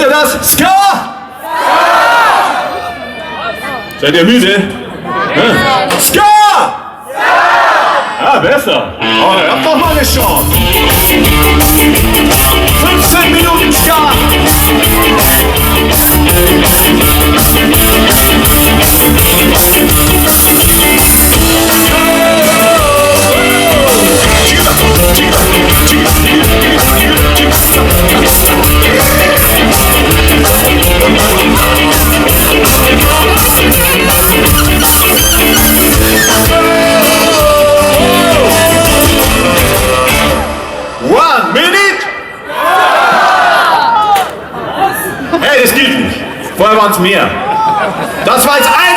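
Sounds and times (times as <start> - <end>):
ska band playing live: 9.0 - 41.2.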